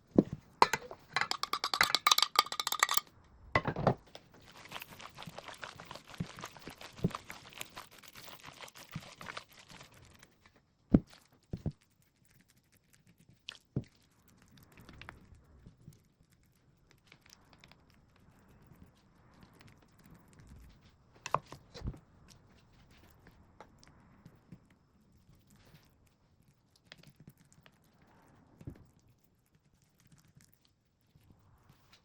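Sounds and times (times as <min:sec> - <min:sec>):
crackly scraping and rustling: 0:00.0 - 0:03.0, 0:03.6 - 0:32.0
dishes and utensils clattering: 0:00.6 - 0:03.0.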